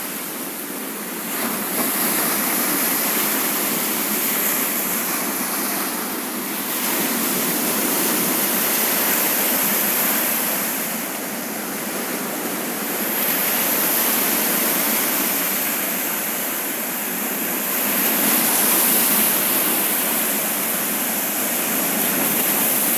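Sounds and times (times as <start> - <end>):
waves breaking on shore: 0.0 - 22.9.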